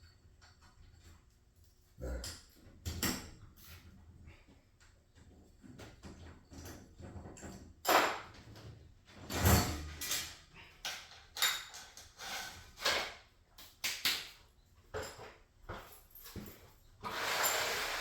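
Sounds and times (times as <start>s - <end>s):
tools knocking and scraping: 5.2s - 13.2s.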